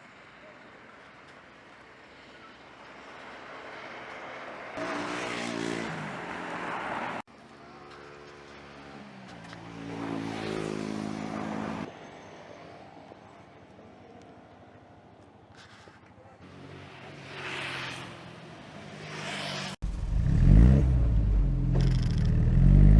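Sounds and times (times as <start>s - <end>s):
car engine revving: 19.8s - 22.9s.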